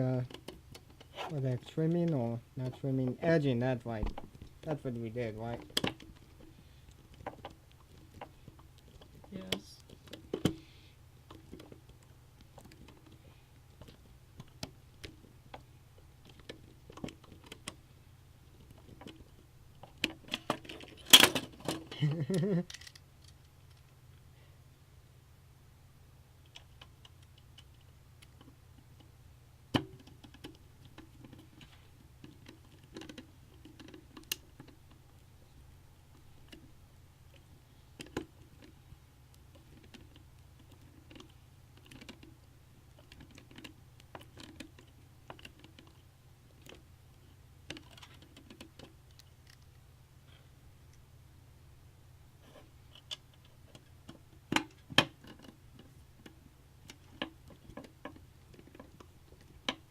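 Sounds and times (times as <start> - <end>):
low steady hum: 0.0 - 59.9
small parts and tools clicking: 18.4 - 24.0, 29.7 - 35.3, 37.3 - 49.8.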